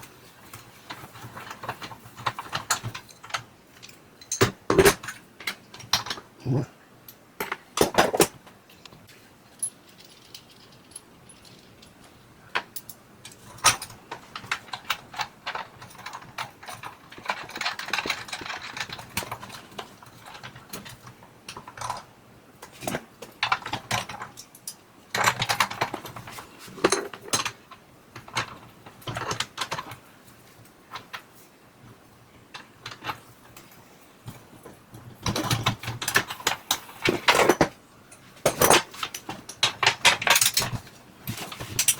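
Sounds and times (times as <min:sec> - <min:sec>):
metal tools clinking and rattling: 0:00.8 - 0:06.2, 0:09.5 - 0:22.0, 0:22.8 - 0:30.0, 0:35.2 - 0:41.9.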